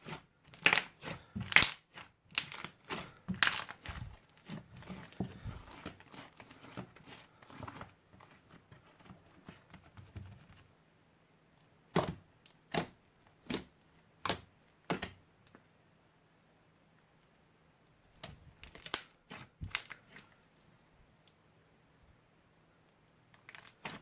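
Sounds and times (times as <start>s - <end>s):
short slime crunches: 0.0s - 7.8s
crunchy slime crackling: 0.0s - 8.5s, 18.6s - 20.2s, 23.4s - 24.0s.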